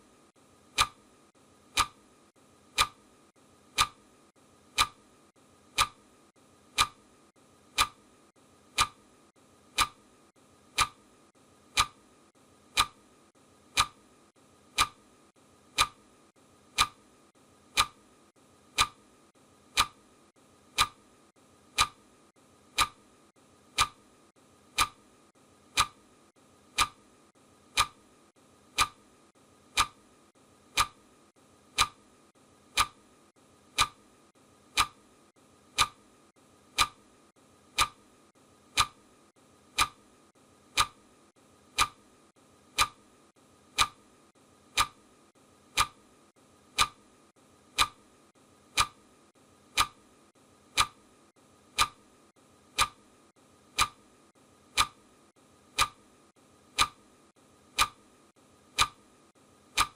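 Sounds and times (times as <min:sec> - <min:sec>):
clock ticking: 0:00.7 - 0:01.1, 0:01.7 - 0:02.0, 0:02.7 - 0:03.1, 0:03.7 - 0:04.1, 0:04.7 - 0:05.1, 0:05.7 - 0:06.1, 0:06.7 - 0:07.1, 0:07.7 - 0:08.1, 0:08.7 - 0:09.1, 0:09.7 - 0:10.1, 0:10.7 - 0:11.1, 0:11.7 - 0:12.0, 0:12.7 - 0:13.0, 0:13.7 - 0:14.0, 0:14.7 - 0:15.1, 0:15.7 - 0:16.1, 0:16.7 - 0:17.1, 0:17.7 - 0:18.0, 0:18.7 - 0:19.0, 0:19.7 - 0:20.0, 0:20.7 - 0:21.1, 0:21.7 - 0:22.1, 0:22.7 - 0:23.0, 0:23.7 - 0:24.1, 0:24.7 - 0:25.1, 0:25.7 - 0:26.0, 0:26.7 - 0:27.1, 0:27.7 - 0:28.1, 0:28.7 - 0:29.1, 0:29.7 - 0:30.0, 0:30.7 - 0:31.1, 0:31.7 - 0:32.0, 0:32.7 - 0:33.0, 0:33.7 - 0:34.1, 0:34.7 - 0:35.0, 0:35.7 - 0:36.1, 0:36.7 - 0:37.1, 0:37.7 - 0:38.1, 0:38.7 - 0:39.0, 0:39.7 - 0:40.1, 0:40.7 - 0:41.0, 0:41.7 - 0:42.0, 0:42.7 - 0:43.0, 0:43.7 - 0:44.0, 0:44.7 - 0:45.1, 0:45.7 - 0:46.0, 0:46.7 - 0:47.1, 0:47.7 - 0:48.1, 0:48.7 - 0:49.0, 0:49.7 - 0:50.0, 0:50.7 - 0:51.0, 0:51.7 - 0:52.0, 0:52.7 - 0:53.0, 0:53.7 - 0:54.0, 0:54.7 - 0:55.0, 0:55.8 - 0:56.0, 0:56.8 - 0:57.0, 0:57.7 - 0:58.0, 0:58.7 - 0:59.0.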